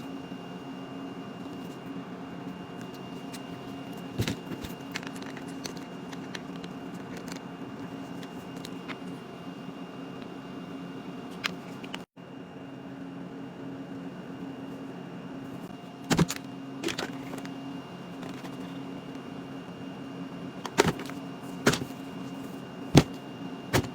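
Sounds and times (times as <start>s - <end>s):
steady low hum: 0.0s - 23.9s
packaging taps and clicks: 20.7s - 22.0s, 23.0s - 23.9s.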